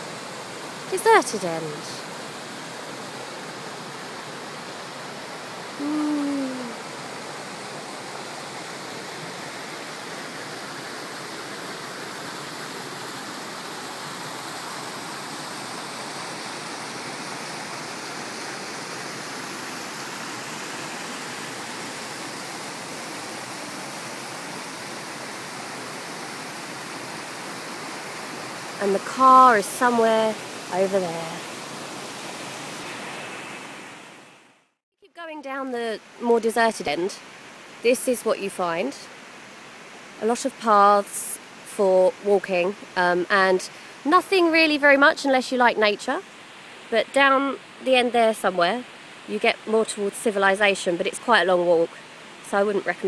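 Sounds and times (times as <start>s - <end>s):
waterfall rushing: 0.0s - 34.0s.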